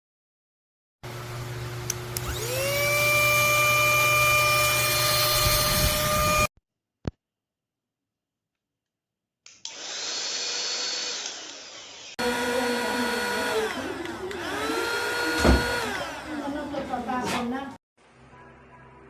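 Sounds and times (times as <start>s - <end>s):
mini vacuum cleaner whining: 1.9s - 6.5s, 9.6s - 17.0s.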